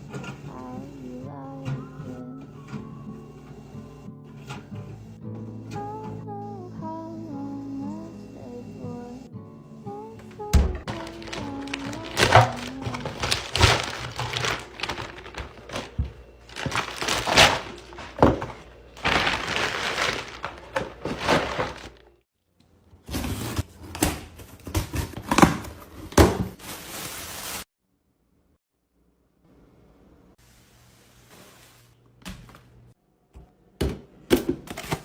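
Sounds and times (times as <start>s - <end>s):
containers knocking and clacking: 10.8s - 22.0s
packaging rustling: 10.8s - 22.1s, 23.1s - 27.7s.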